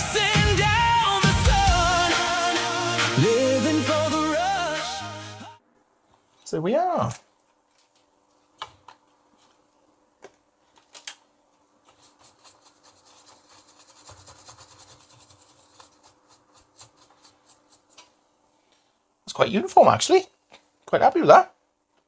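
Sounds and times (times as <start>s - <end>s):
hand scraping strokes: 11.8s - 18.2s.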